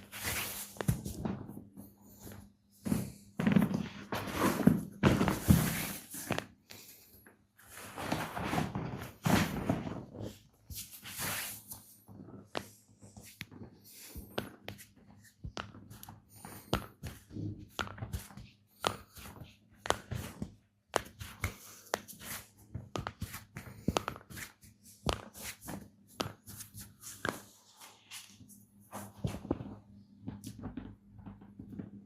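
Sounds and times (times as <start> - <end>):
hands slapping and rubbing skin: 12.5 - 29.7.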